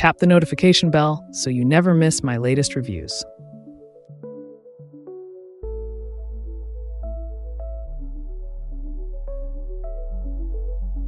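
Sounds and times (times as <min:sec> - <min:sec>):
soft electronic ambient music: 0:00.0 - 0:11.0
deep bass tone: 0:05.8 - 0:11.0.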